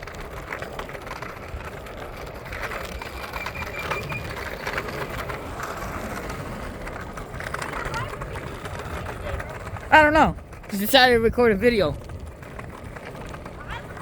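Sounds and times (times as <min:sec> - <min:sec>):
scooter wheels on wet pavement: 0:00.0 - 0:14.0
small clicks and rattles: 0:00.0 - 0:14.0
thin high tone: 0:02.3 - 0:05.8.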